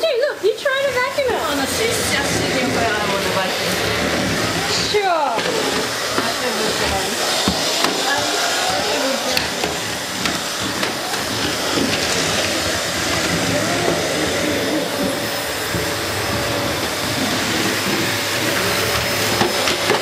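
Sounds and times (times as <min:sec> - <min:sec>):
vacuum cleaner droning: 0:00.0 - 0:20.0.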